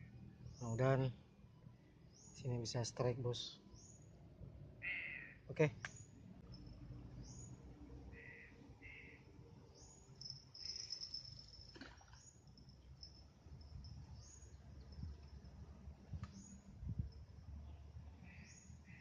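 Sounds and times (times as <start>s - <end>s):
high-pitched wildlife chirps: 9.8s - 15.1s.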